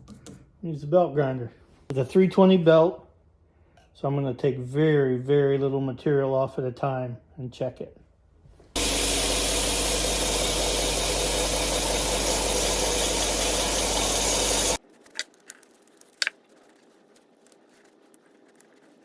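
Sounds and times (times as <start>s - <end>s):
belt grinder grinding steel: 8.8s - 14.8s.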